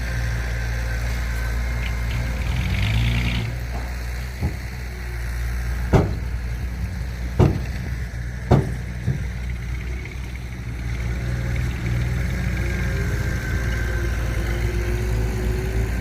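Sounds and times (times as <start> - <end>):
heavy diesel engine running: 0.0 - 16.0
sharp clunks: 3.7 - 4.8, 5.9 - 6.4, 7.4 - 9.5.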